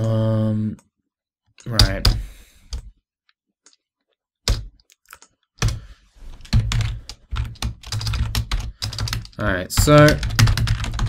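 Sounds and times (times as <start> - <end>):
typing on computer keyboard: 6.4 - 11.0.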